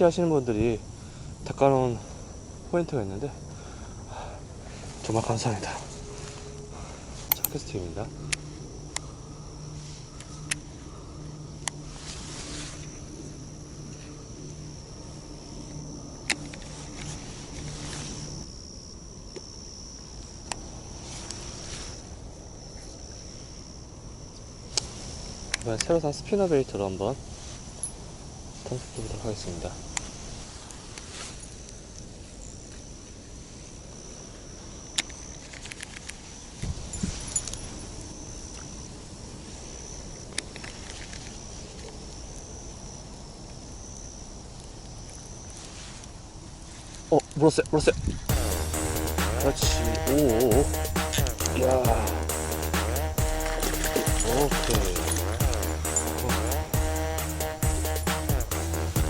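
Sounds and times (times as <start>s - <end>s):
insects chirring: 0.0s - 59.0s
sharp clicks: 7.3s - 7.6s.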